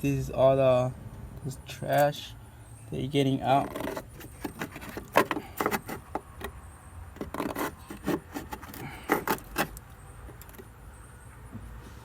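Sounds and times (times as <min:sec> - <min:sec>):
stick scraping out dry leaves: 0:03.5 - 0:06.2, 0:07.2 - 0:09.8.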